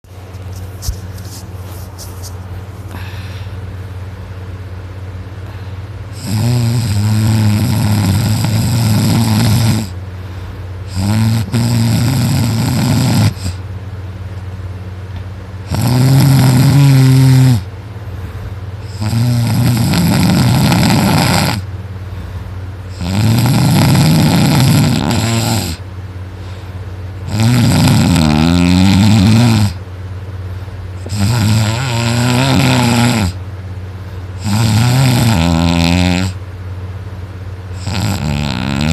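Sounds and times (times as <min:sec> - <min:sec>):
person snoring loudly: 0:05.4 - 0:10.0, 0:10.9 - 0:13.6, 0:15.6 - 0:17.7, 0:18.8 - 0:21.7, 0:22.9 - 0:25.8, 0:27.2 - 0:29.8, 0:31.0 - 0:33.4, 0:34.4 - 0:36.4, 0:37.7 - 0:38.9.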